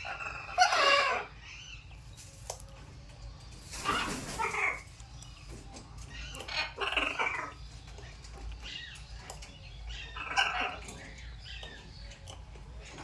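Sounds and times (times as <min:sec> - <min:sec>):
parrots squawking: 0:00.0 - 0:01.8, 0:03.8 - 0:04.9, 0:06.1 - 0:07.7, 0:09.9 - 0:11.6.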